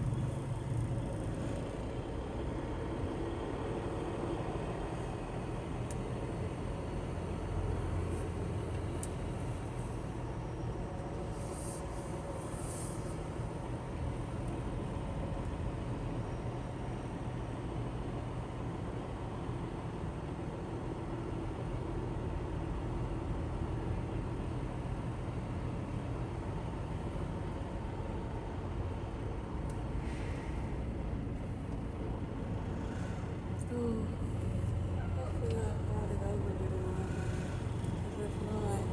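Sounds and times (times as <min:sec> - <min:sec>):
road noise: 0:00.0 - 0:16.0, 0:25.7 - 0:38.9
truck engine drone: 0:00.0 - 0:38.9.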